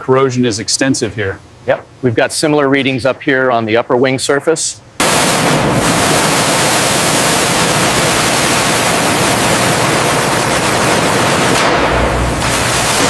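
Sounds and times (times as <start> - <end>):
loud rushing hiss: 5.0 - 13.0.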